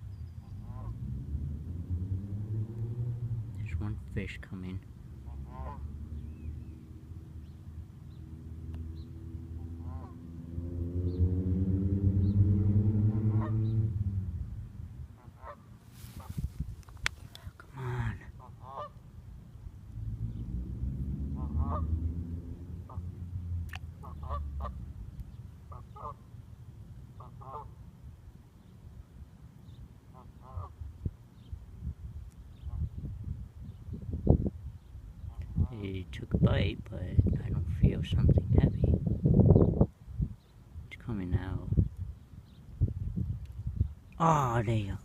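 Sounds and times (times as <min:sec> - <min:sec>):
low rumble: 0:00.0 - 0:04.2, 0:04.8 - 0:15.0, 0:19.6 - 0:25.2
geese honking: 0:05.2 - 0:05.9, 0:09.6 - 0:10.2, 0:13.3 - 0:13.6, 0:18.4 - 0:19.0, 0:21.4 - 0:21.9, 0:24.0 - 0:24.8, 0:27.2 - 0:27.7, 0:30.2 - 0:30.8.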